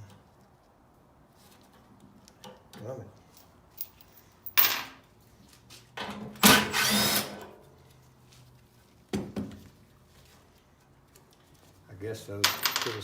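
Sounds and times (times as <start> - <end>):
power drill whining: 6.4 - 7.4.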